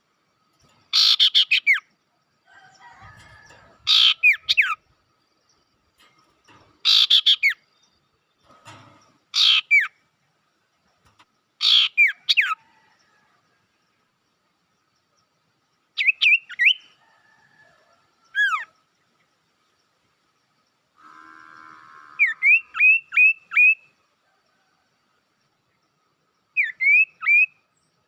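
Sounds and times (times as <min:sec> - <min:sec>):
songbird calling: 0:00.6 - 0:02.0, 0:03.8 - 0:04.9, 0:06.0 - 0:08.2, 0:09.3 - 0:10.0, 0:11.6 - 0:12.9, 0:16.0 - 0:17.0, 0:18.3 - 0:18.8, 0:21.0 - 0:24.0, 0:26.5 - 0:28.0.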